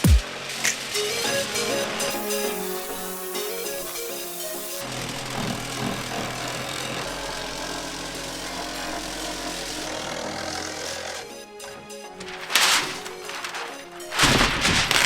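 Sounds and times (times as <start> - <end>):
motor running steadily: 2.1 - 11.3.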